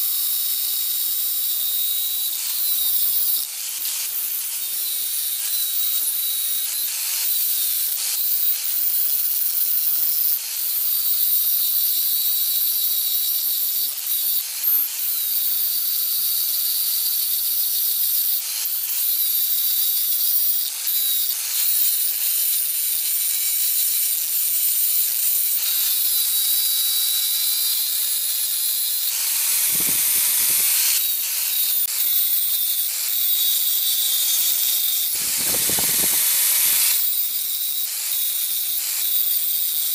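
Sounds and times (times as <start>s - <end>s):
power tool motor whine: 0.0s - 39.9s
harsh abrading hiss: 25.6s - 39.0s.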